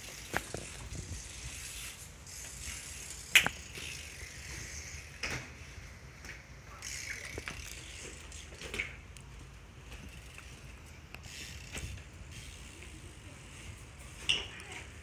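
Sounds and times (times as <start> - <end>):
bike freewheel ratchet clicking: 0.0 - 9.1, 9.8 - 14.7.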